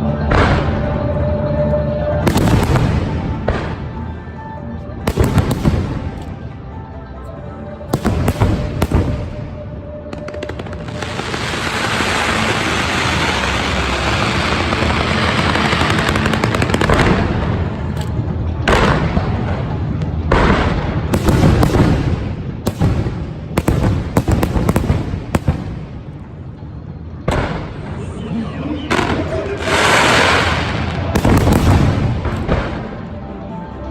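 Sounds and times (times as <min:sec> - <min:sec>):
fireworks hissing crackle: 0:10.1 - 0:18.0, 0:29.3 - 0:32.8.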